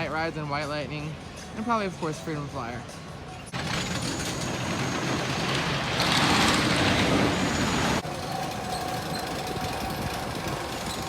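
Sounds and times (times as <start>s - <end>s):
roller coaster rumbling on track: 3.6s - 11.0s.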